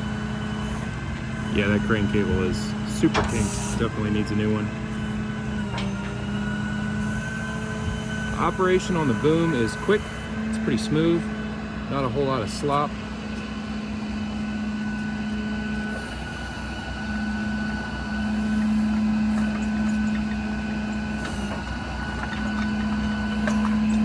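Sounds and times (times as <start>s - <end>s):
diesel truck engine humming: 0.0s - 24.0s.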